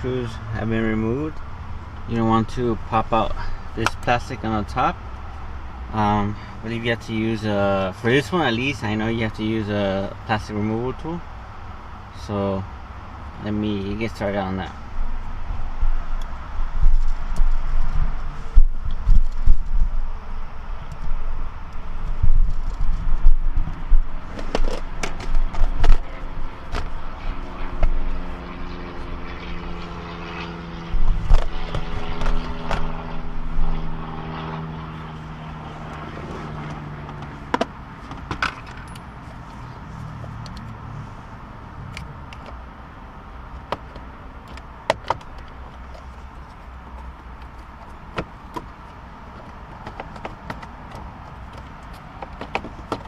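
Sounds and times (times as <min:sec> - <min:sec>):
steady multi-tone hum: 0:00.0 - 0:53.0
handling knocks and bumps: 0:22.2 - 0:27.0, 0:36.0 - 0:39.0, 0:43.6 - 0:53.0.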